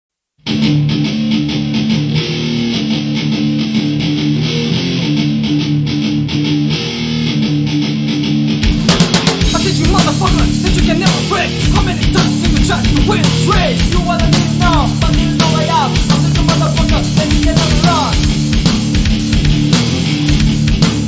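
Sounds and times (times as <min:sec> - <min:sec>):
rap-metal guitar riff: 0:00.4 - 0:21.0
full band with drums: 0:08.6 - 0:21.0.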